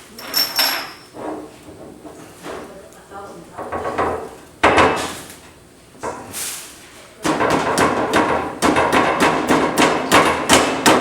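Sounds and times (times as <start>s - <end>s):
rapid sharp knocks and rattling: 7.2s - 11.0s.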